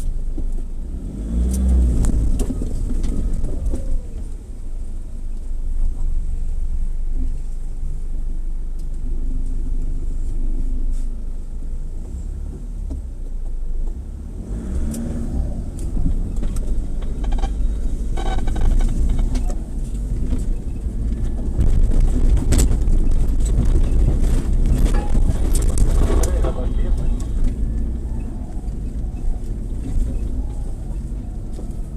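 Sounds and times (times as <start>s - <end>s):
off-road vehicle engine rumble: 0.0s - 31.9s
knocks and rattles: 15.8s - 27.8s.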